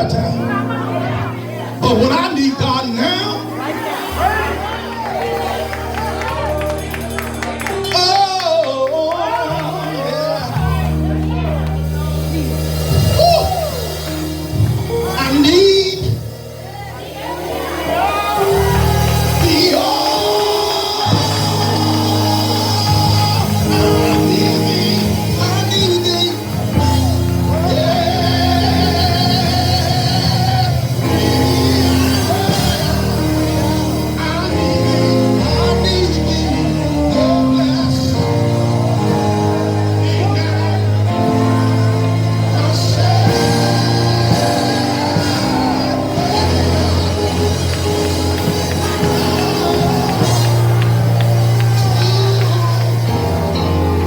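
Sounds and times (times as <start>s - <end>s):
keyboard chords: 0.0s - 54.0s
drums: 9.5s - 54.0s
person singing or shouting: 12.9s - 14.2s.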